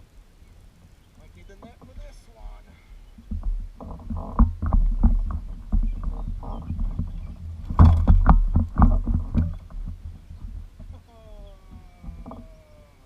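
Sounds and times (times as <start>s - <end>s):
thumps and knocks in boat: 1.5s - 2.6s, 3.2s - 11.1s, 11.7s - 12.6s.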